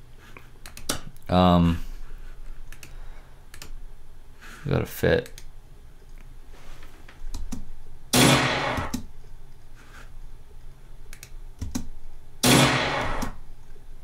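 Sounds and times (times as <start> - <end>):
keyboard and mouse clicks: 0.6 - 1.3, 2.7 - 3.8, 7.3 - 7.7, 11.1 - 11.9
gunshot bursts: 8.1 - 8.9, 12.4 - 13.4.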